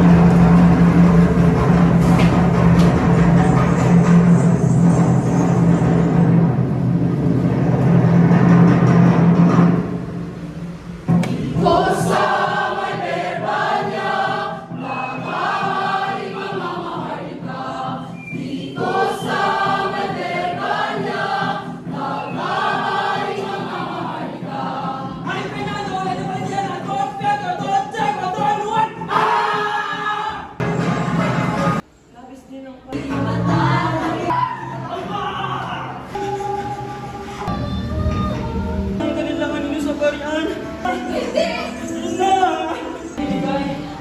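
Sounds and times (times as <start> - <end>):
choir singing slowly: 11.1 - 25.7, 32.9 - 44.0.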